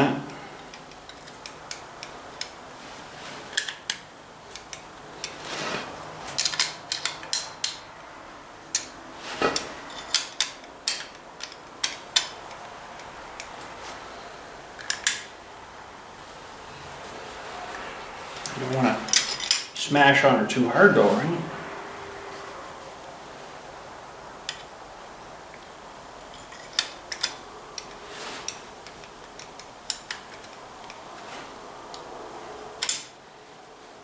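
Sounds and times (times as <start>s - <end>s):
soft metal scrape: 21.0s - 22.9s.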